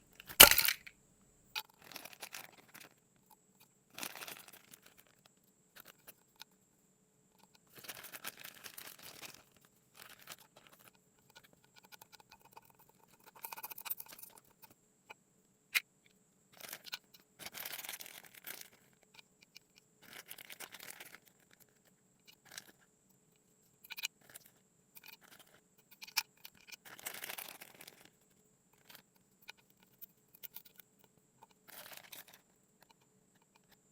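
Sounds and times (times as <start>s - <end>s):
sharp click: 0.2s - 0.9s.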